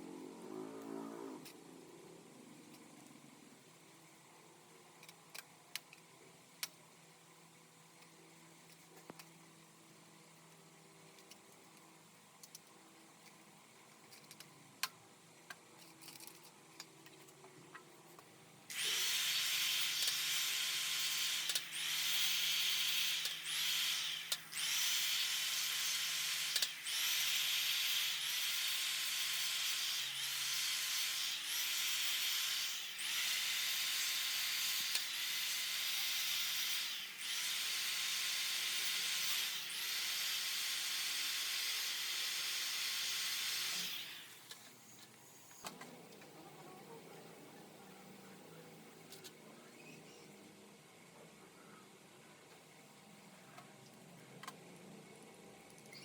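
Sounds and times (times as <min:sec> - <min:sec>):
workshop tool hissing: 0:18.7 - 0:45.7.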